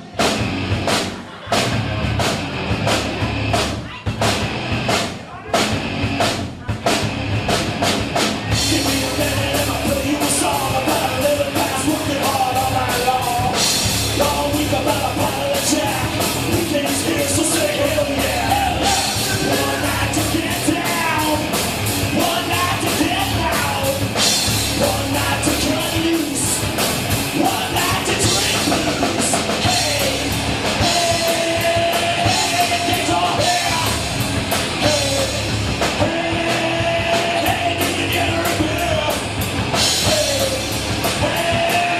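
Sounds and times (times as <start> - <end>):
drum kit: 0.0 - 41.9
rock music: 0.0 - 41.9
person singing: 8.5 - 41.9.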